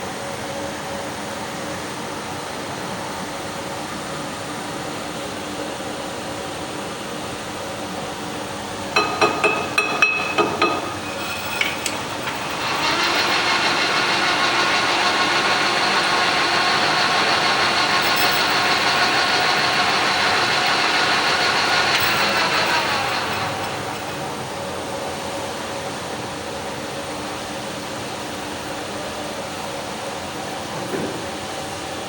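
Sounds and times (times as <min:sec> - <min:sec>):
lathe running with whine: 0:08.5 - 0:26.5.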